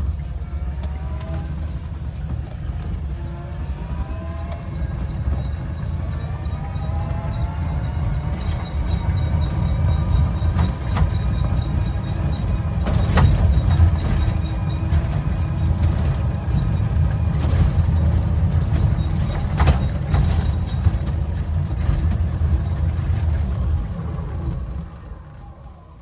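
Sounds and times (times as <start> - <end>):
electric trike rumble: 0.0 - 26.0
high motor whine: 0.0 - 26.0.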